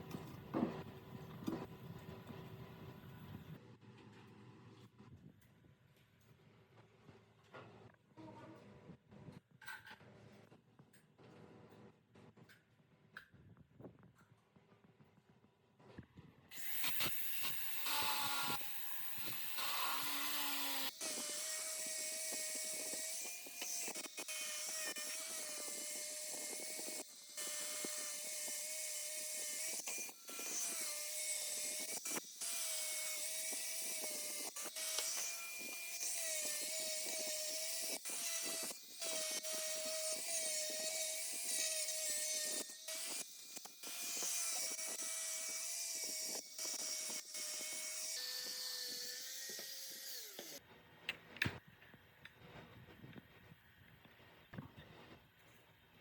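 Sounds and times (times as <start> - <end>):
power tool whining: 16.5 - 50.6.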